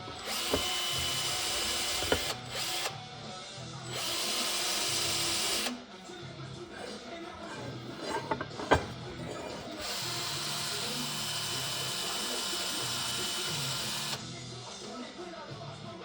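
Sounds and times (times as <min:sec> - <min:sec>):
handheld power tool whirring: 0:00.0 - 0:03.0, 0:03.9 - 0:05.8, 0:07.4 - 0:14.2.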